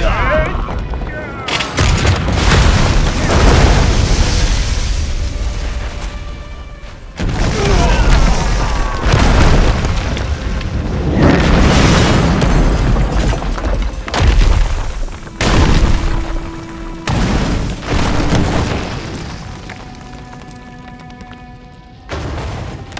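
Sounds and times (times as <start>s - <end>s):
dramatic music score: 0.0s - 22.9s
explosion booms: 7.2s - 16.3s.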